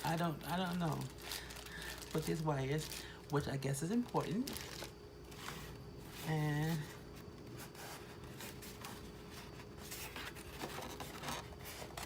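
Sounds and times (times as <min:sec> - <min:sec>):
cardboard rustling and scraping: 0:04.3 - 0:12.0.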